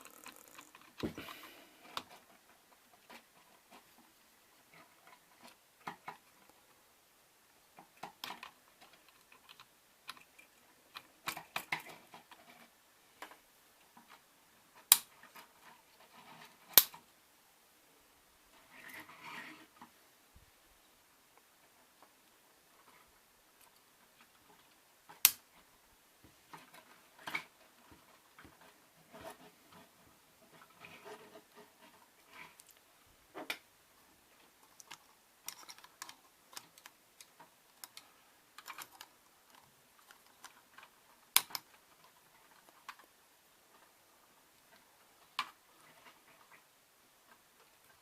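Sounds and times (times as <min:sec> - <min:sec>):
plastic pieces clicking and rattling: 0:34.6 - 0:43.1.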